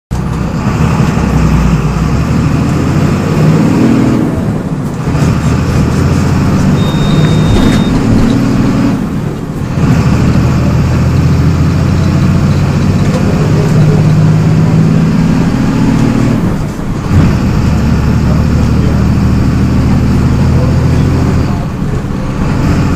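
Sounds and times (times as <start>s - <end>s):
bus engine accelerating: 0.1s - 22.9s.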